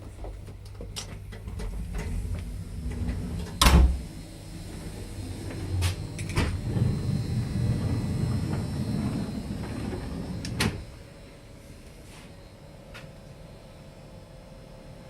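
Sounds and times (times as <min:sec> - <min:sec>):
train doors clicking and sliding: 0:00.0 - 0:11.0
door shutting: 0:01.0 - 0:11.0
low rumble: 0:01.1 - 0:11.2.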